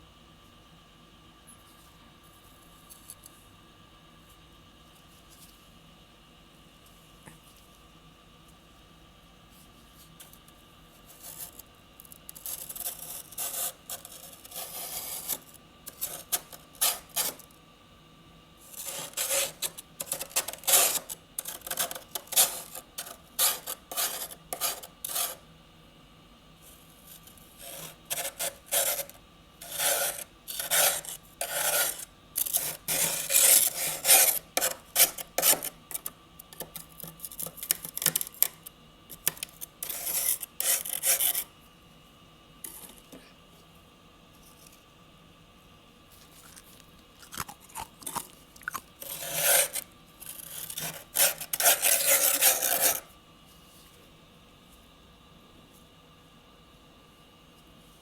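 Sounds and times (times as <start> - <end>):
freezer frost being scraped: 11.0 - 11.6, 12.3 - 17.5, 18.7 - 25.4, 27.0 - 41.5, 46.2 - 53.1.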